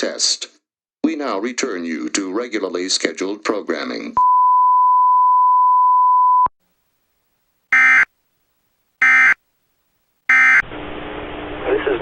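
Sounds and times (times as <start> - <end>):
steady electronic beep tone: 7.7 - 8.1.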